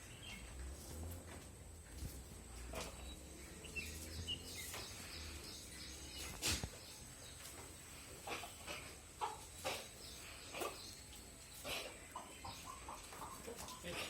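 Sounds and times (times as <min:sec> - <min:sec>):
small birds chirping: 0:00.0 - 0:14.0
hen clucking: 0:07.7 - 0:14.0.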